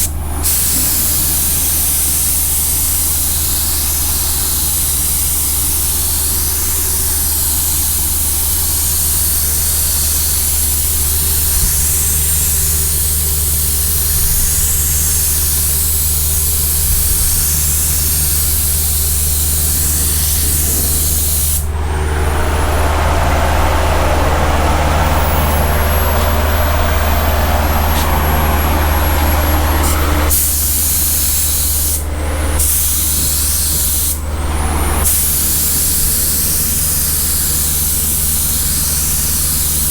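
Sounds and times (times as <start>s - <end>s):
constant low hum: 0.0s - 37.9s
paint spray gun hissing: 0.0s - 39.9s
thin rising whine: 11.0s - 30.5s.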